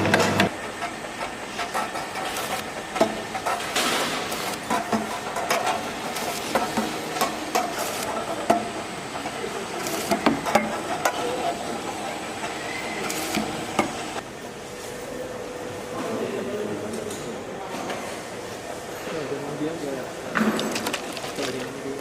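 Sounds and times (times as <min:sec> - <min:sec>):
machine running: 0:00.0 - 0:16.8
containers clicking and knocking: 0:20.3 - 0:22.0.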